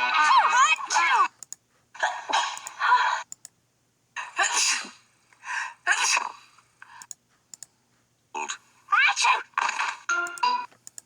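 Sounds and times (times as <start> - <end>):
person sneezing: 4.2 - 5.0.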